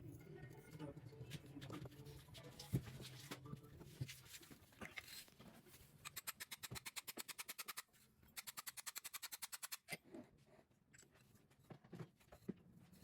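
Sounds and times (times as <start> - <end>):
faint handling noises: 1.2 - 6.1.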